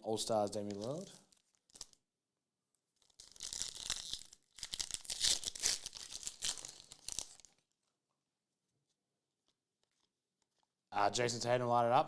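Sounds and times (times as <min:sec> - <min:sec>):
wrapper tearing and crumpling: 0:00.6 - 0:02.0, 0:02.9 - 0:07.8.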